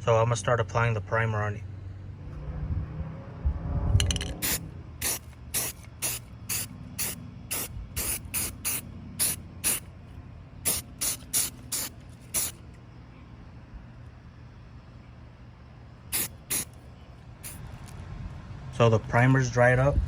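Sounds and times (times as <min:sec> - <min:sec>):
aerosol can spraying in bursts: 0:04.4 - 0:09.8, 0:10.6 - 0:12.6, 0:16.1 - 0:16.8.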